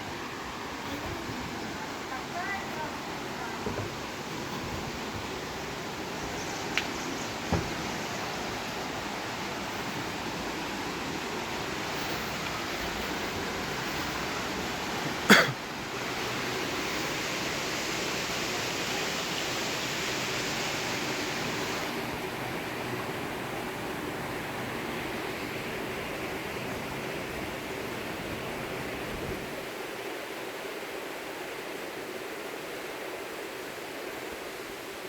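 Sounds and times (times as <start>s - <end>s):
waterfall rushing: 0.0s - 29.1s
faint clicks: 6.7s - 7.0s.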